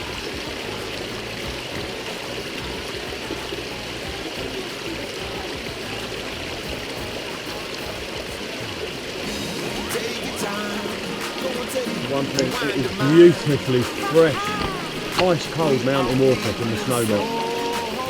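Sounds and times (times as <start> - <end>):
stream rushing over rocks: 0.0 - 18.0.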